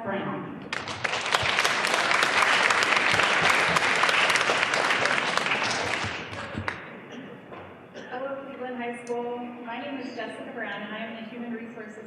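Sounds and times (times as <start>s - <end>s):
audience applauding: 0.6s - 6.9s.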